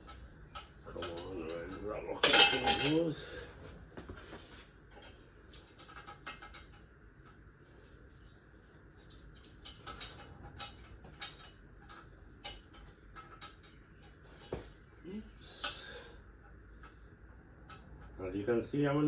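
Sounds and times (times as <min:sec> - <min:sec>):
hand tools and metal parts clicking: 0:00.0 - 0:03.2, 0:04.9 - 0:07.4, 0:08.2 - 0:17.0.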